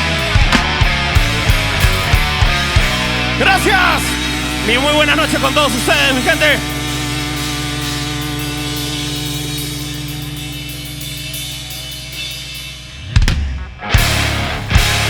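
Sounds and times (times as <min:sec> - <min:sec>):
drum hits and cymbal crashes: 0:00.0 - 0:15.0
held guitar chord ringing: 0:00.0 - 0:15.0
rock band playing loudly: 0:00.0 - 0:15.0.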